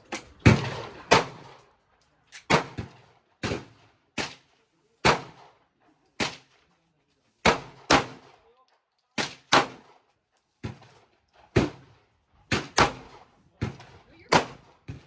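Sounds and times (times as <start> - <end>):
pistol shots with echo: 0.1 - 1.6, 2.4 - 4.4, 5.0 - 5.5, 7.4 - 8.4, 9.2 - 10.0, 12.5 - 14.9.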